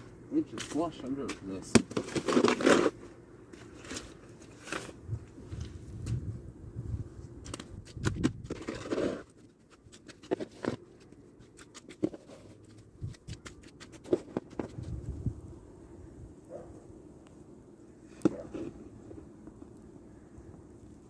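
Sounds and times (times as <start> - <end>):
snow shovel scraping wet snow: 0.5 - 3.0, 8.5 - 9.3.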